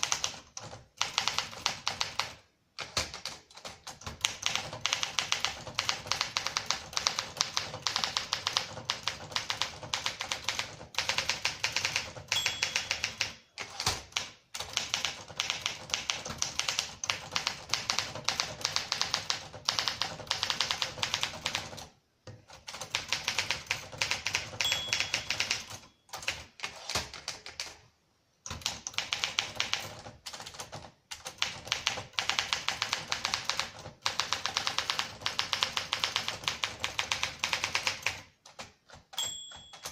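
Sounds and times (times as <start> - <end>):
typewriter key strikes: 3.9 - 21.2, 24.0 - 27.1, 39.0 - 39.9
typewriter bell ringing: 12.3 - 13.5, 24.5 - 26.1, 39.1 - 39.9.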